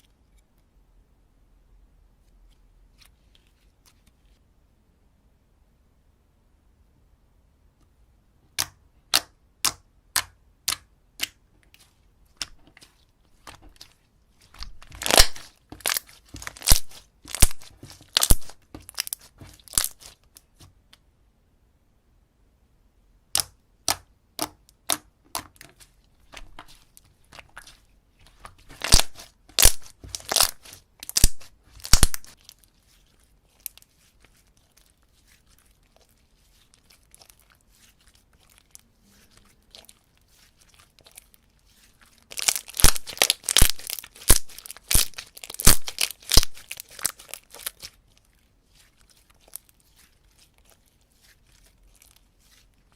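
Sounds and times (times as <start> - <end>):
slime clicking and popping: 14.6 - 20.1, 23.3 - 25.6, 28.8 - 32.4, 42.3 - 48.0.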